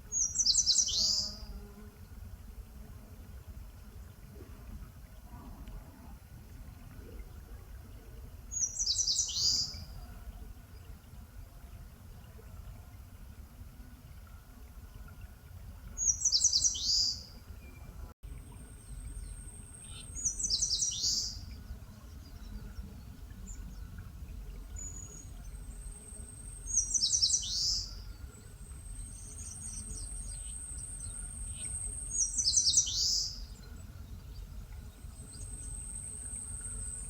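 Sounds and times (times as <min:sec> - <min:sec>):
bird singing: 0:00.1 - 0:01.7, 0:08.5 - 0:09.9, 0:16.0 - 0:37.0.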